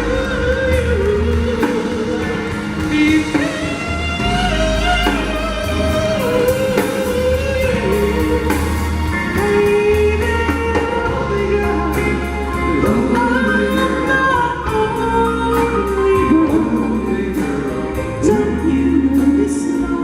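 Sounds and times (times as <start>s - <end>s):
slow doo-wop love song: 0.0s - 20.0s.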